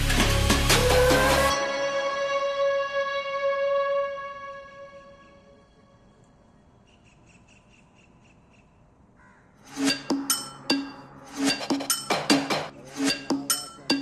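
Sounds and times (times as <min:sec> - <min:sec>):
ringing pitched percussion notes: 0:09.7 - 0:14.0.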